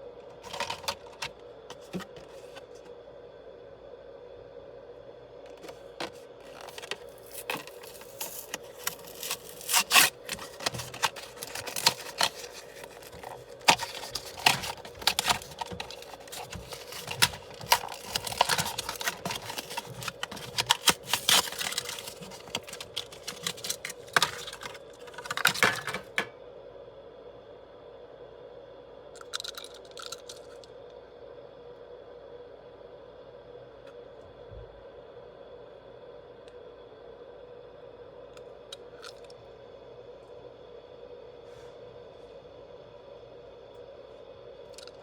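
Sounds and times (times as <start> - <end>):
toy packaging clicks and rustling: 0.4 - 2.6, 5.5 - 26.2, 29.2 - 30.7.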